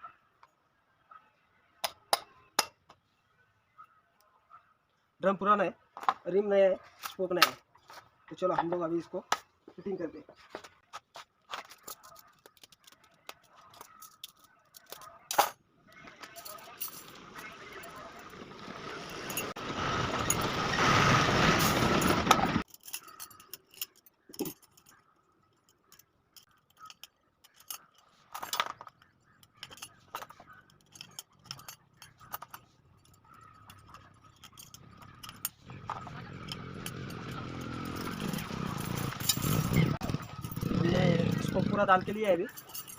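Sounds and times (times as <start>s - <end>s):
metal spokes clinking: 11.5s - 20.8s, 21.4s - 42.9s.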